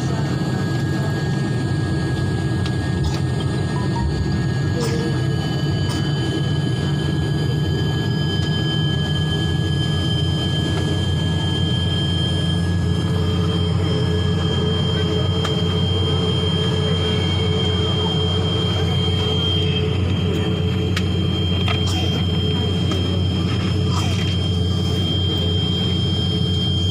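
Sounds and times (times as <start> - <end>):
airliner engine drone: 0.0 - 26.9
high-pitched whine: 0.0 - 26.9.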